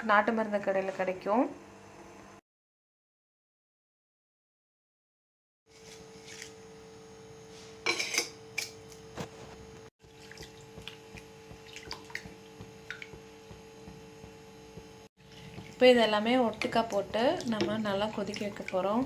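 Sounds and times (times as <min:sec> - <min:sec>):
taps and drips into water: 0:10.2 - 0:15.8.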